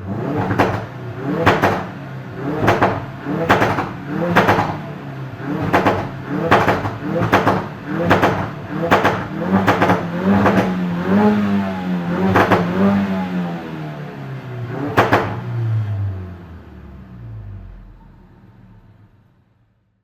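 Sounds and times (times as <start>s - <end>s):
car engine revving: 0.0s - 19.3s
exhaust pops and crackles: 0.4s - 2.0s, 2.6s - 4.9s, 5.6s - 10.9s, 12.3s - 12.8s, 15.0s - 15.5s.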